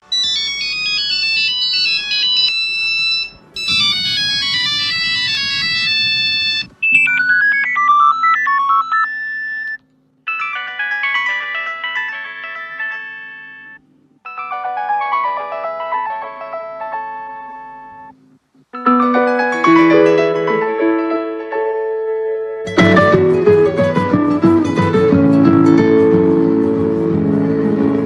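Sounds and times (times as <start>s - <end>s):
mobile phone ringtone melodies: 0.0s - 18.1s, 18.8s - 21.2s.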